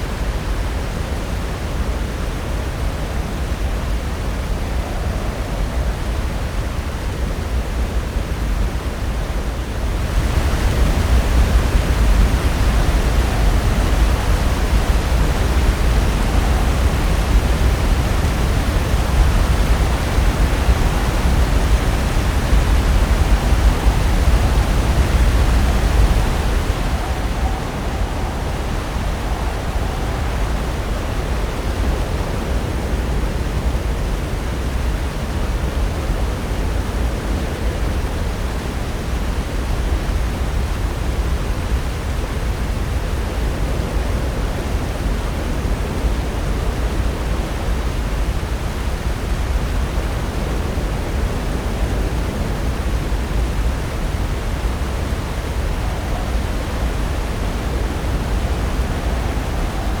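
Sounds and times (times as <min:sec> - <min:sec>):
waves breaking on shore: 0:00.0 - 1:00.0.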